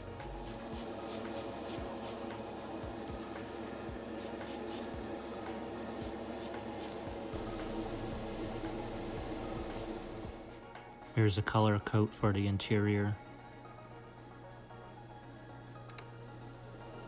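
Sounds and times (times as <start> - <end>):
background music: 0.0 - 17.0
spray can hissing: 0.4 - 2.3, 4.2 - 4.9, 6.0 - 10.4.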